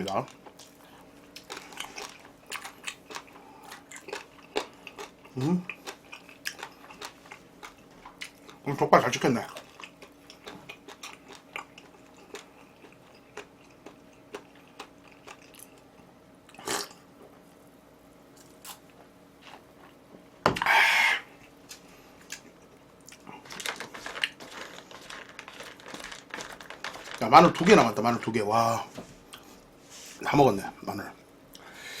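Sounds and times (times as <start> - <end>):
chewing and biting: 0.3 - 8.6, 9.4 - 17.0.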